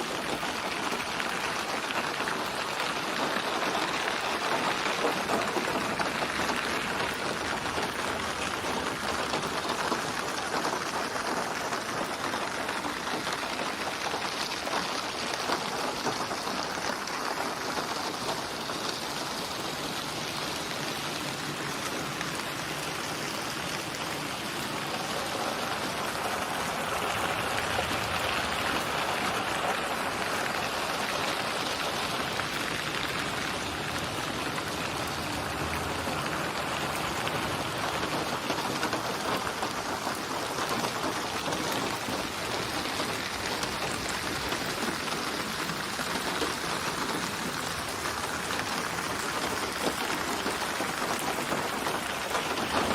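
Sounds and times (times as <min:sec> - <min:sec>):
steady rain falling: 0:00.0 - 0:52.9.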